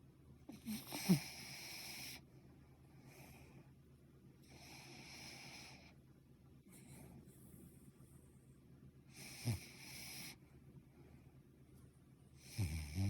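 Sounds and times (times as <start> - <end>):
dog wheezy snoring breaths: 0.5 - 3.8, 4.4 - 6.0, 9.1 - 11.2, 12.4 - 13.0.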